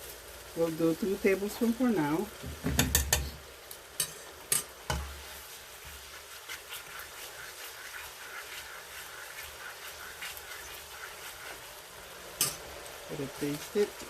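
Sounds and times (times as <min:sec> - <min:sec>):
sauce bubbling and sizzling: 0:00.0 - 0:14.0.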